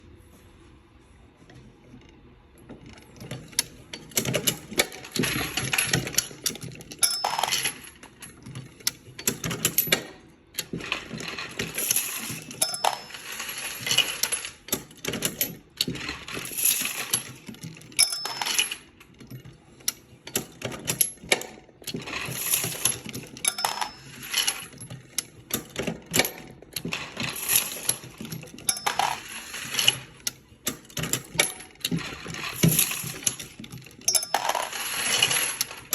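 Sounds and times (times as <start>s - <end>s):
reloading press clattering: 8.6s - 35.9s.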